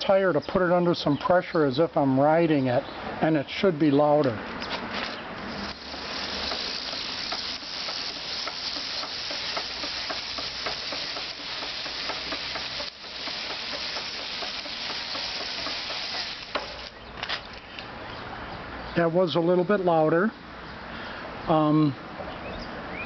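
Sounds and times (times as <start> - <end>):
tyre hissing under hand: 4.9 - 16.9.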